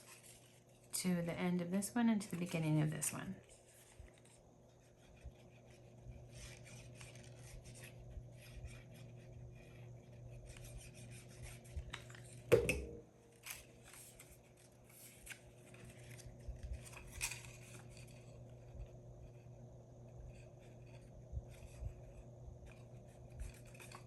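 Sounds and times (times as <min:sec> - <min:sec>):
paper strips rustling: 0:00.0 - 0:12.5, 0:13.3 - 0:19.4
faint steady hum: 0:00.0 - 0:24.0.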